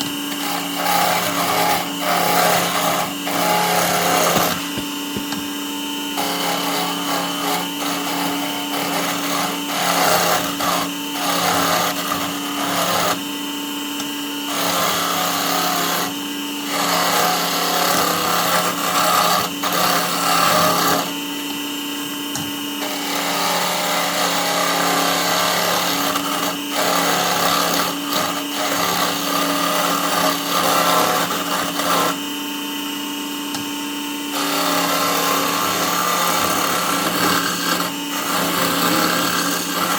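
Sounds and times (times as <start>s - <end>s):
turning tool scraping wood: 0.0s - 32.8s, 33.5s - 39.9s
lathe motor hum: 0.0s - 39.9s.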